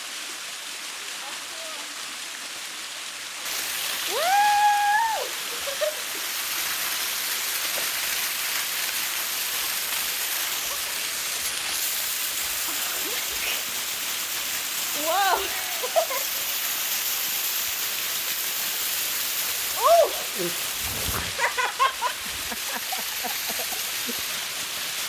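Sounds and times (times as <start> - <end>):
waterfall rushing: 3.3 - 25.0
person yelling: 4.1 - 5.3, 15.0 - 15.8, 19.8 - 20.6.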